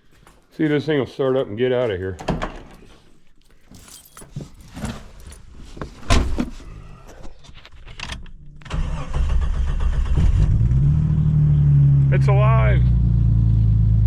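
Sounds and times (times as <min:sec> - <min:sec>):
car engine starting and idling: 0:08.3 - 0:14.0.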